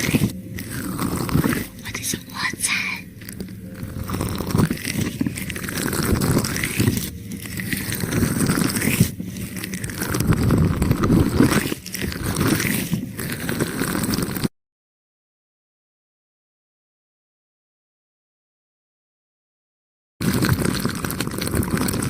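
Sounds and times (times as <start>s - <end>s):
wet gel squishing and rubbing: 0.0s - 14.5s, 20.2s - 22.0s.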